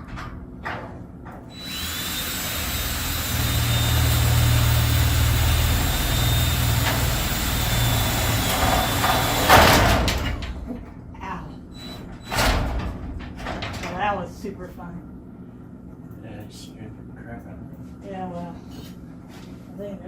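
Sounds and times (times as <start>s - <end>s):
motor humming: 1.5s - 10.4s
loud clunk: 6.8s - 10.7s.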